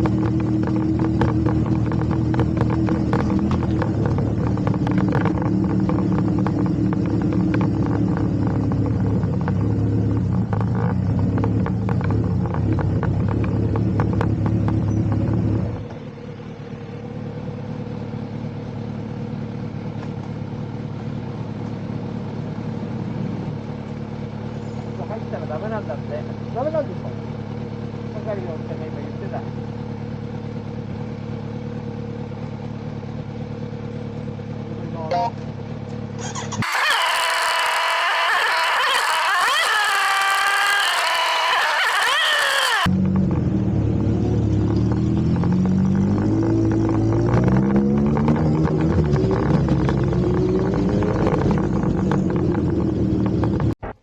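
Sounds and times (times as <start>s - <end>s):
motorcycle engine ticking: 0.0s - 36.9s
quiet steady engine: 0.0s - 54.0s.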